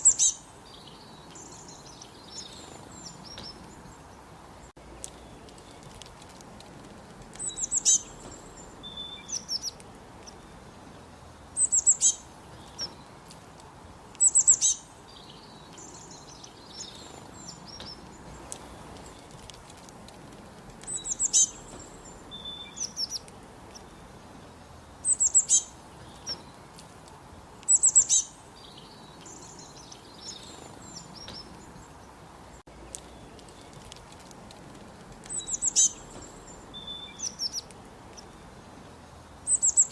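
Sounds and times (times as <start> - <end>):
bird whistling song: 0.0 - 3.9, 7.4 - 10.6, 11.6 - 13.0, 14.2 - 19.4, 20.8 - 24.0, 25.0 - 26.6, 27.6 - 31.8, 35.2 - 38.5, 39.4 - 39.9.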